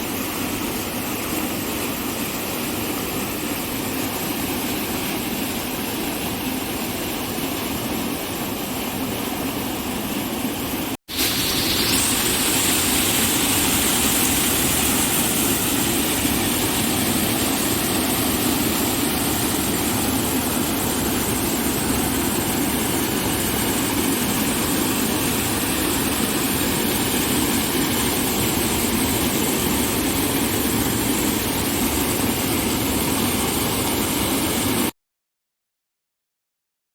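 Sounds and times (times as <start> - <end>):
rushing water: 11.1 - 34.9.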